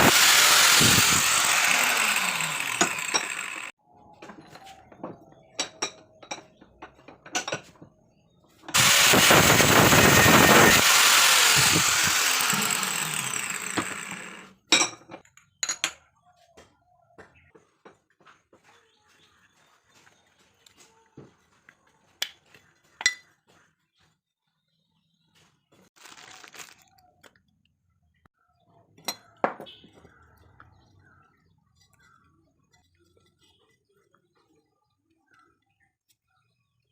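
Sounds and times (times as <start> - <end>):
power tool winding down: 0.0 - 3.7, 8.7 - 14.6.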